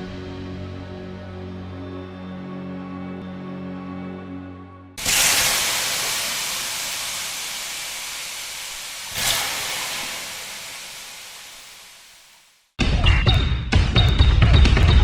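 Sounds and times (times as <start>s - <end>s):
loud hissing rush: 5.0s - 12.6s.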